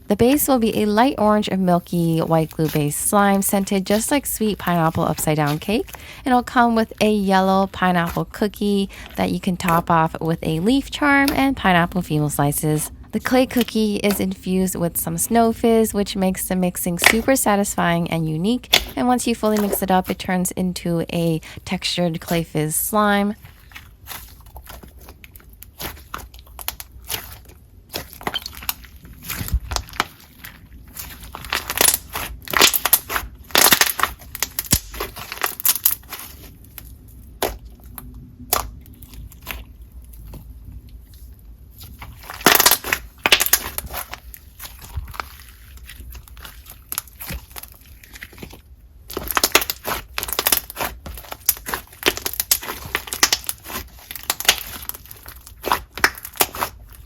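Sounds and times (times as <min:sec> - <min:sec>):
slime crackling and popping: 0:02.0 - 0:07.0, 0:18.5 - 0:20.2, 0:23.4 - 0:40.4, 0:41.0 - 0:57.0.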